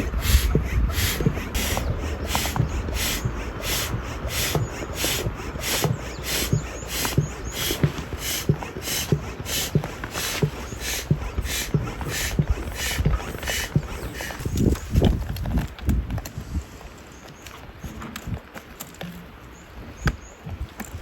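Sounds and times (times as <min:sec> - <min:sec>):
stream flowing: 0:00.0 - 0:14.4
dog panting: 0:00.0 - 0:14.9.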